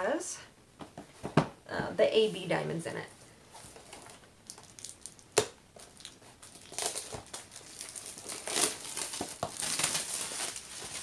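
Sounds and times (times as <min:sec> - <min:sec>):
packaging crinkling and rustling: 0:03.6 - 0:11.0.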